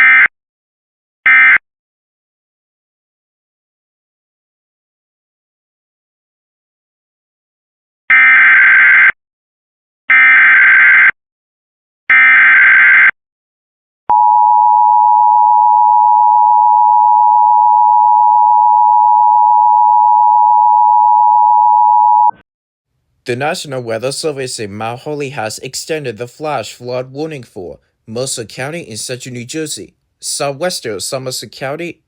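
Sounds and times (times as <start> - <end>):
long steady attention tone: 14.1 - 22.4.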